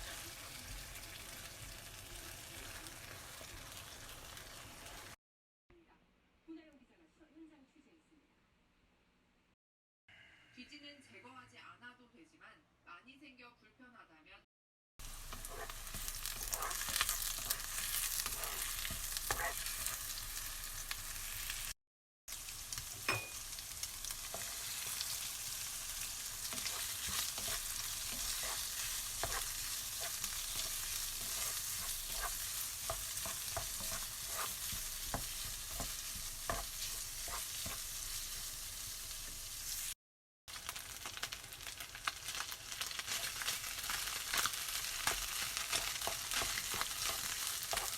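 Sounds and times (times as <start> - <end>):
food sizzling in a pan: 0.0 - 5.2, 15.0 - 47.9
stirring clicks and scrapes: 15.3 - 20.0, 26.5 - 37.8, 45.1 - 47.9.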